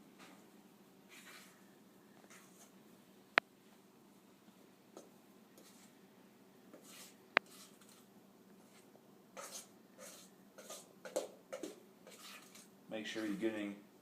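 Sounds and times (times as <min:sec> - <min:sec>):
utensil scraping batter from bowl: 0:01.1 - 0:01.6, 0:02.3 - 0:02.8, 0:06.7 - 0:13.7.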